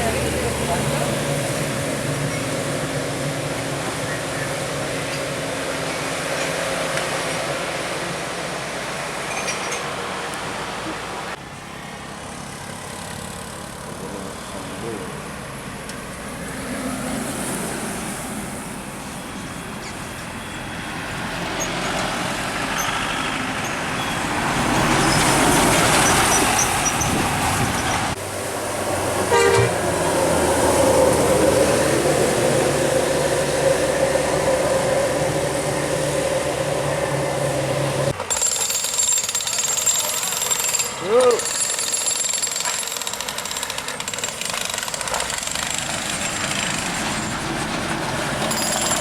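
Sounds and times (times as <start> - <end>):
bus passing: 0.0 - 38.3, 45.0 - 49.0
bus air horns: 29.2 - 30.0.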